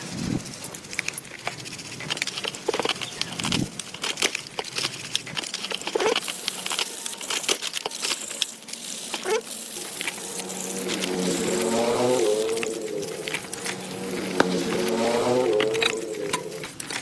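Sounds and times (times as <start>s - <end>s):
steady hiss: 6.2s - 17.0s.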